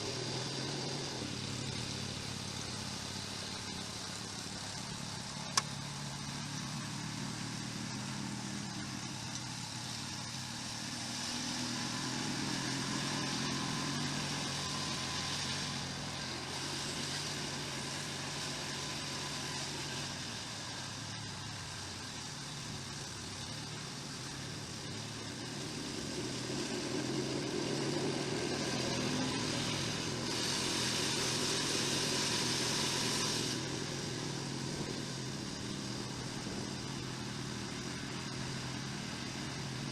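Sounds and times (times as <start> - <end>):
rushing hiss: 0.0 - 39.9
snowblower engine running: 0.0 - 39.9.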